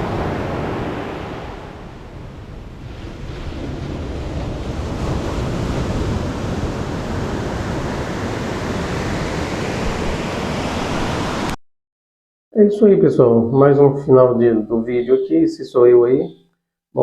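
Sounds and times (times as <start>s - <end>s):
wind buffeting microphone: 0.0s - 11.5s.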